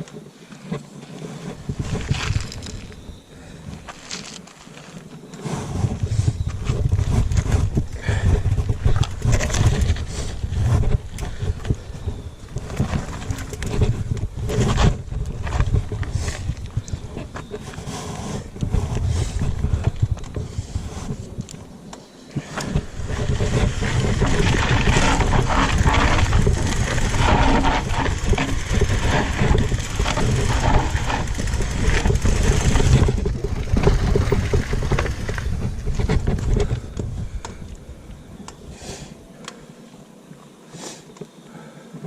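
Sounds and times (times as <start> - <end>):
bicycle tyre rumbling: 0.8 - 38.4
bike rattling and clattering: 1.5 - 3.0, 6.0 - 17.4, 22.6 - 37.7
wind buffeting microphone: 1.5 - 3.9, 5.5 - 38.8.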